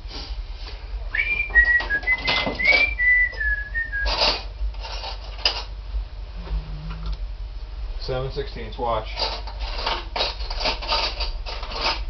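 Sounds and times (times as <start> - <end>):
man whistling a tune: 1.1 - 4.1.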